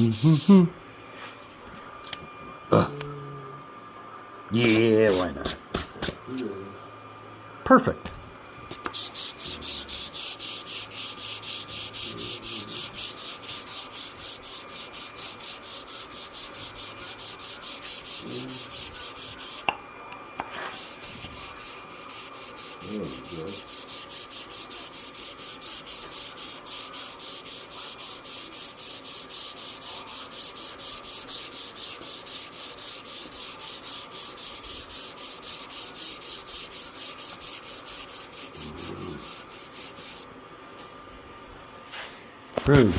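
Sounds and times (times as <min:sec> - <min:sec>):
sandpaper rubbing back and forth: 0:00.0 - 0:00.7, 0:08.8 - 0:19.6, 0:20.6 - 0:40.2.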